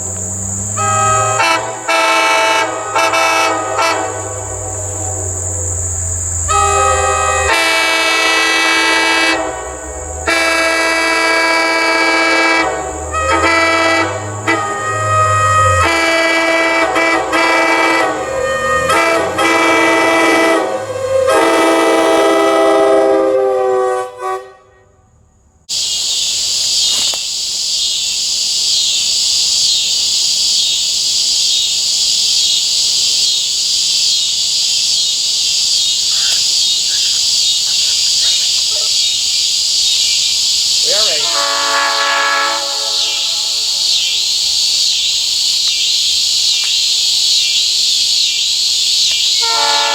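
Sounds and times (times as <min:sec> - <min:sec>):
insects chirring: 0:00.0 - 0:22.5, 0:25.3 - 0:49.9
locomotive air horn: 0:00.6 - 0:25.2, 0:40.8 - 0:43.8, 0:49.4 - 0:49.9.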